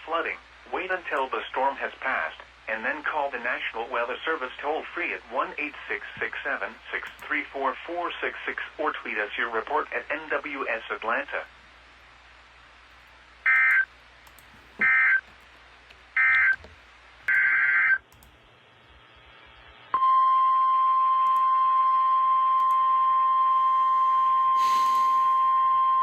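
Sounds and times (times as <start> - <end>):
steady warning alarm tone: 13.5 - 13.9, 14.8 - 15.2, 16.2 - 16.6.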